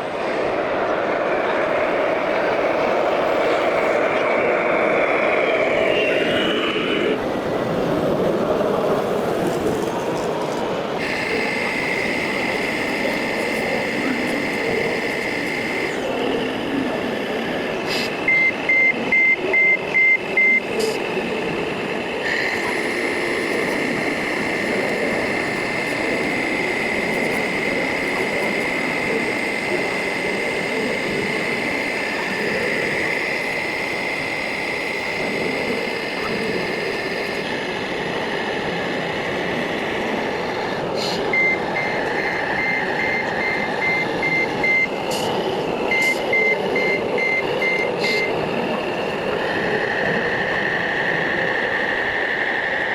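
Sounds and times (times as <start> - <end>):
background murmur: 0.0 - 34.3
electric motor and gearbox whine: 0.0 - 52.9
quick reversing beeps: 18.2 - 21.0, 41.3 - 45.0, 45.9 - 48.4.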